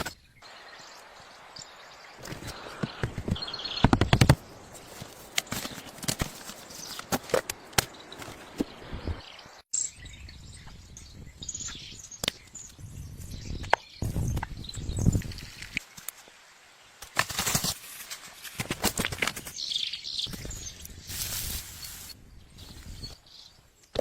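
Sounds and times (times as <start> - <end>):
rustling: 2.2 - 8.7, 20.3 - 23.2.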